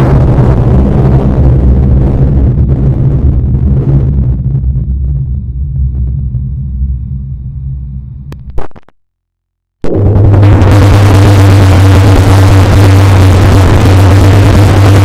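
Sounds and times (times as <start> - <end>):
monster low rumble: 0.0 - 8.4, 9.8 - 15.0
loud low droning: 0.0 - 8.9, 9.8 - 15.0
brief crackle: 8.3 - 9.0.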